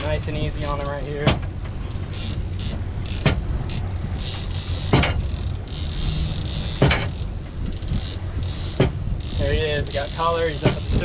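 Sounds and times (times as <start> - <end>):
outboard engine running: 0.0 - 11.0
gaff knocking on boat: 1.2 - 1.8, 4.9 - 5.2, 6.8 - 7.2, 8.7 - 9.0, 10.6 - 11.0.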